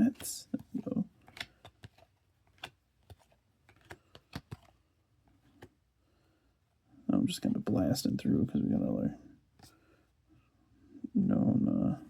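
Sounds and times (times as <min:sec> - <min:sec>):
trading cards clicking and tapping: 0:00.0 - 0:05.8.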